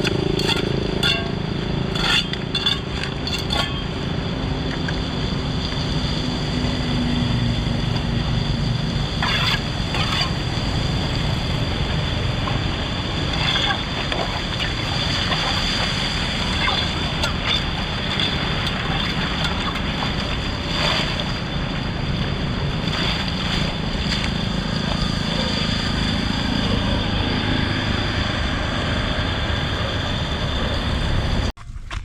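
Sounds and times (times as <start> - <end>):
floodwater pouring into drain: 13.3 - 21.6.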